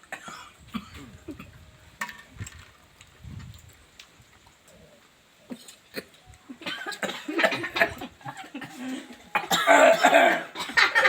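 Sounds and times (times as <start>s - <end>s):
people coughing: 0.1s - 1.6s, 5.5s - 11.0s.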